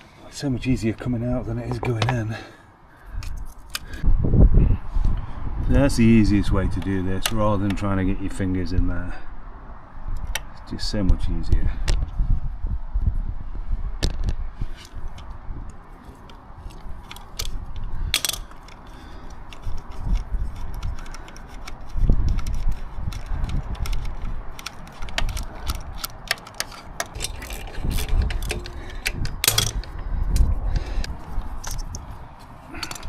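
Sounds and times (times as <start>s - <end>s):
dull knocks of parts handled: 1.6s - 2.3s, 24.6s - 30.5s, 31.6s - 33.0s
ratchet wrench clicking: 18.2s - 18.9s.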